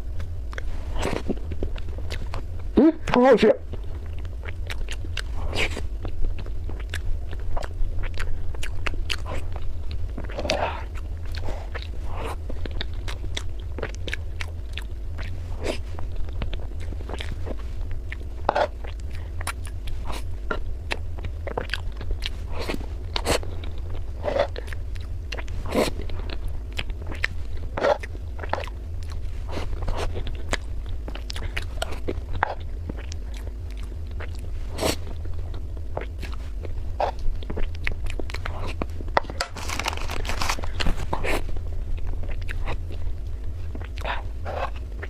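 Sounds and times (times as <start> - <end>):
person chewing with wet smacks: 0.0 - 45.0
steady low hum: 0.0 - 45.0.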